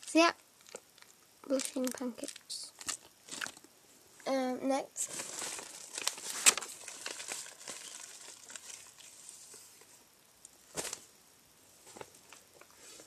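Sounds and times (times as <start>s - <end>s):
plastic packaging crinkling: 0.0s - 3.7s, 5.0s - 9.5s.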